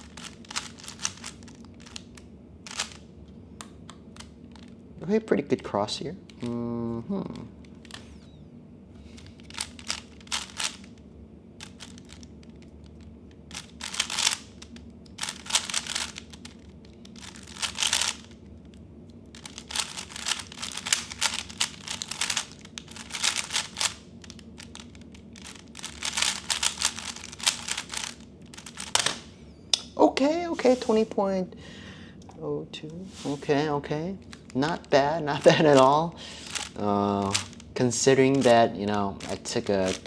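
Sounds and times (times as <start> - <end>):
puzzle cube plastic clicking: 0.0 - 4.8, 7.4 - 8.2, 9.1 - 11.0, 11.6 - 29.8, 34.2 - 40.0.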